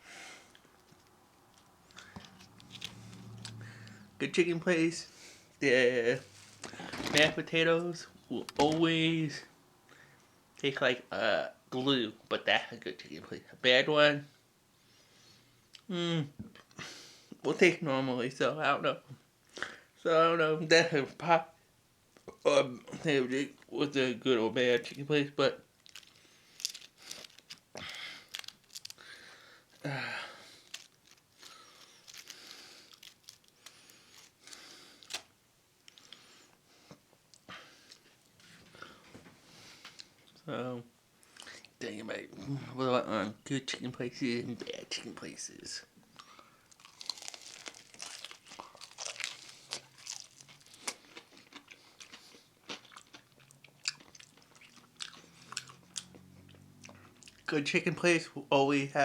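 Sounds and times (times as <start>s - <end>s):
chewing and crunching: 25.8s - 29.1s, 30.6s - 36.3s, 46.1s - 57.5s
tearing and crinkling: 25.8s - 29.2s, 30.5s - 35.3s, 46.7s - 52.3s.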